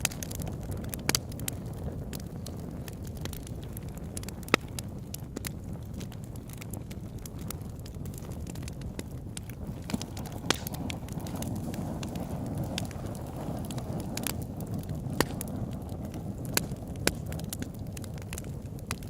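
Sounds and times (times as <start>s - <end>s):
campfire crackling: 0.0s - 19.0s
wood popping and snapping: 2.1s - 19.0s.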